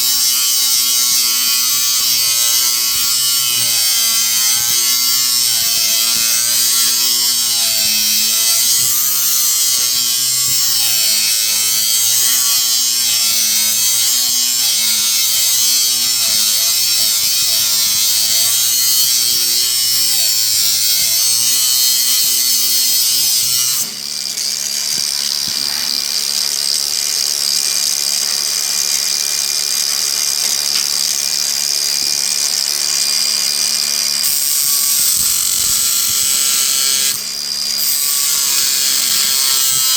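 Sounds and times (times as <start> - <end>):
grinder whining: 0.0 - 39.9.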